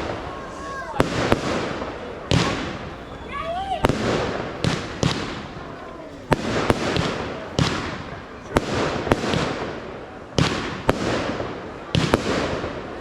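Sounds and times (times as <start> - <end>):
firework shell bursts: 1.0 - 9.8.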